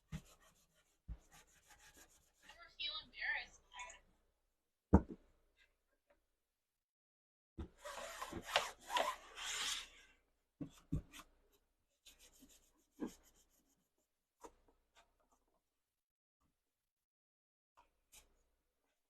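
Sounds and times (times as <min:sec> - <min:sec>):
knocks and handling sounds: 0:10.6 - 0:11.6.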